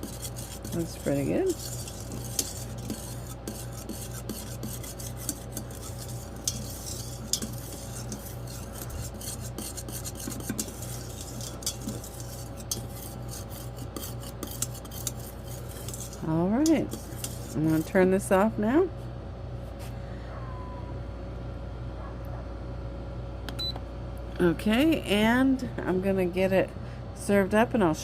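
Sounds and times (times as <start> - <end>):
spoon scraping a steel pot: 0.0 - 18.4
steady low hum: 0.0 - 28.0.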